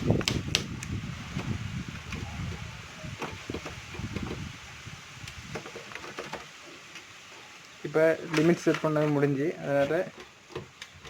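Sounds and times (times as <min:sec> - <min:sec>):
typewriter rattling and handling: 0:05.5 - 0:06.5, 0:08.2 - 0:11.0.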